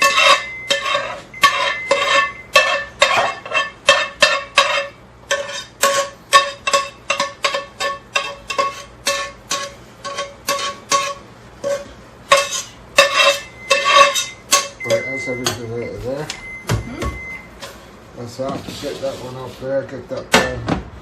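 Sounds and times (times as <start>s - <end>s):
pan ringing: 0.0s - 4.8s, 12.4s - 17.5s
spoon scraping metal pan: 0.0s - 15.7s.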